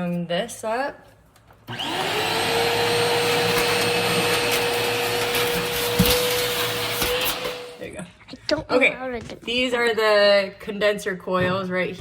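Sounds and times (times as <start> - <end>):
vacuum cleaner motor whine: 1.7 - 7.8.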